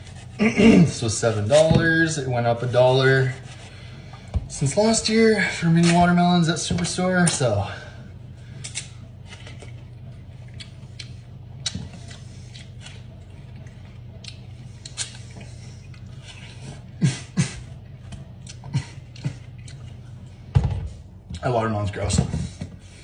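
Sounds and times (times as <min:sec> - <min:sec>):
steady low hum: 0:00.0 - 0:23.0
person chewing watermelon: 0:08.7 - 0:17.0, 0:17.6 - 0:20.3.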